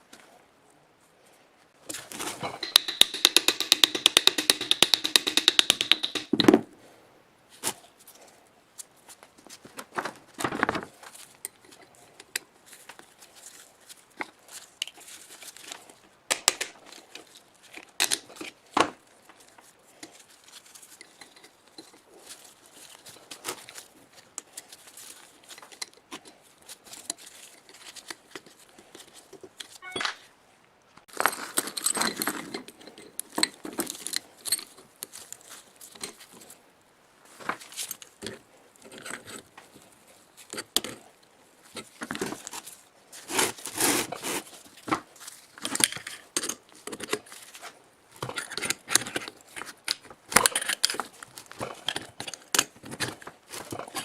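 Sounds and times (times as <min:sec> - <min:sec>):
metallic clicks and clinks: 0:02.6 - 0:06.4.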